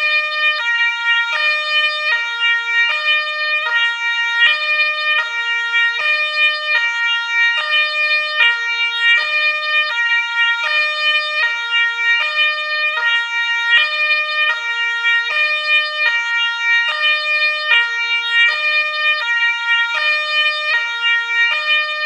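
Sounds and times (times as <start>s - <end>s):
two-tone ambulance siren: 0.0s - 22.0s.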